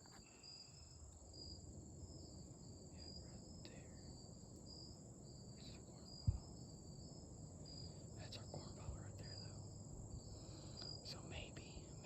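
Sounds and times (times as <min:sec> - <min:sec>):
crickets chirping: 0:00.0 - 0:12.0
dull low thump: 0:06.2 - 0:06.5.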